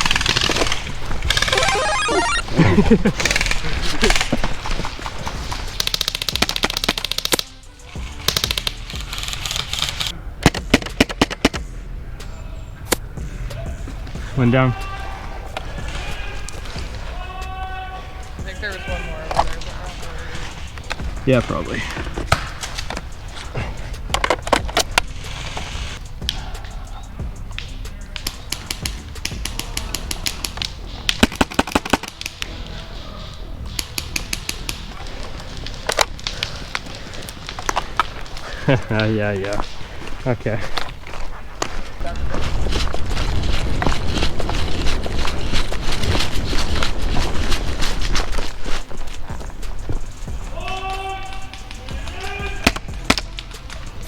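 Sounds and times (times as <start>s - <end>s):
airsoft guns firing: 5.7s - 7.5s, 28.2s - 32.4s.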